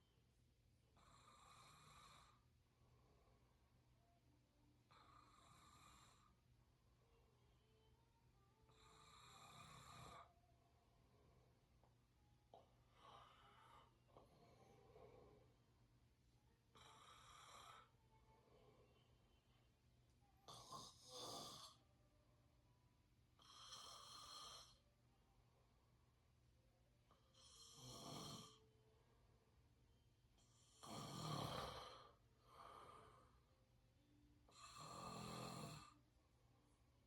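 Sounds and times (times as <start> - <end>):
person snoring: 20.5 - 21.8, 23.4 - 24.8, 27.3 - 28.6, 30.6 - 33.0, 34.5 - 36.0.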